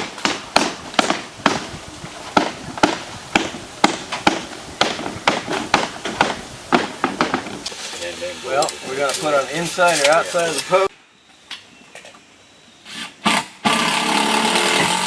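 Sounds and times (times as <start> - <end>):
hammer striking nails into wood: 0.0 - 1.7, 2.4 - 7.5.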